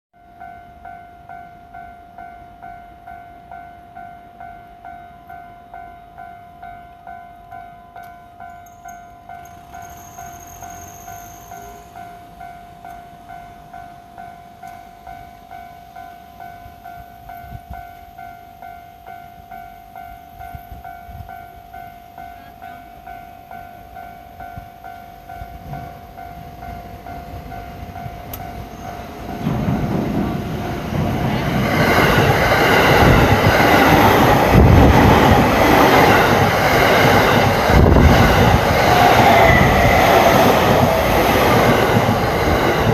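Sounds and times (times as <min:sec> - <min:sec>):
level-crossing warning bell: 0:00.2 - 0:42.9
approaching train rumble: 0:23.5 - 0:42.9.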